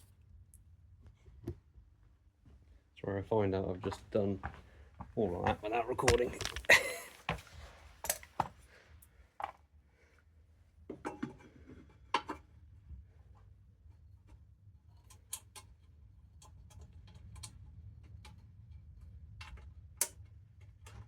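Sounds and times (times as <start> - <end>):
hand tools clicking and knocking: 5.5 - 7.2.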